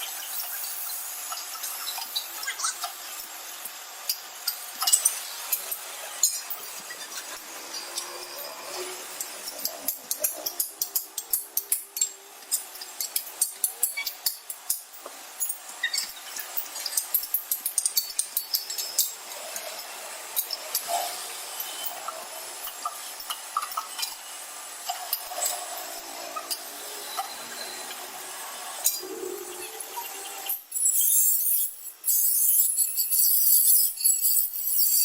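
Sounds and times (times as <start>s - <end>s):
metal rubbing and scraping: 25.0s - 35.0s.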